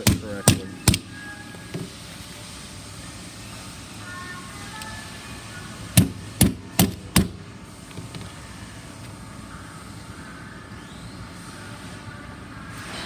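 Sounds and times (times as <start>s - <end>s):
sharp hammer taps: 0.0s - 1.2s.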